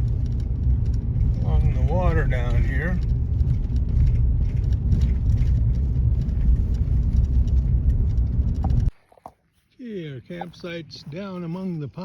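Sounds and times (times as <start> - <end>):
faint ticks and crackles: 0.0 - 9.0
car engine and road noise: 0.0 - 9.1.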